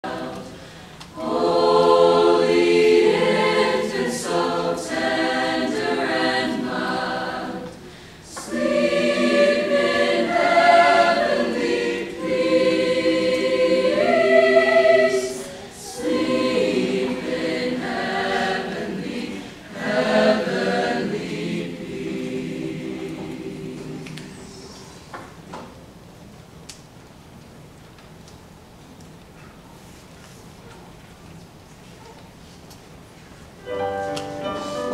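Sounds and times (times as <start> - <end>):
choir singing: 0.0 - 25.1, 33.6 - 34.9
singers breathing: 0.5 - 1.1, 7.8 - 8.4, 15.4 - 15.8.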